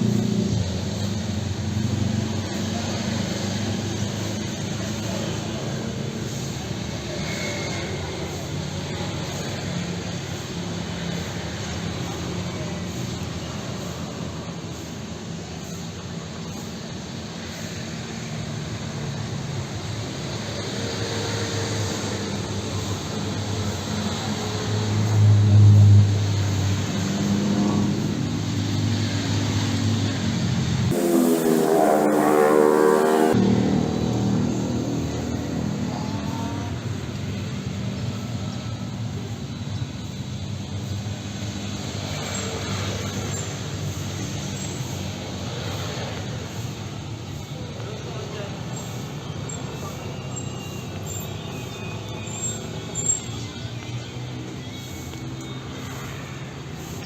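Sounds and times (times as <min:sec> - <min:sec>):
engine running with low hum: 0:00.0 - 0:57.0
even hiss: 0:00.0 - 0:57.0
low hum: 0:30.9 - 0:36.0.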